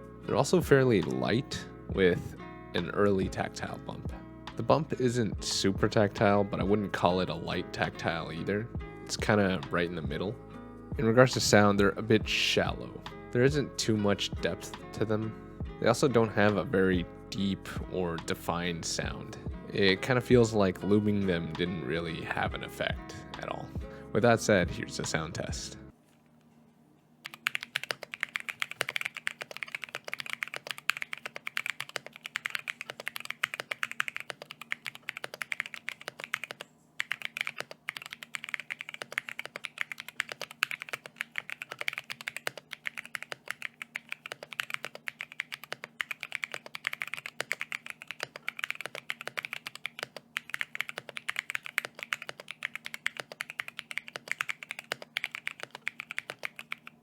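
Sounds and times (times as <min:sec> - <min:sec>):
typing on mechanical keyboard: 0:27.2 - 0:57.0.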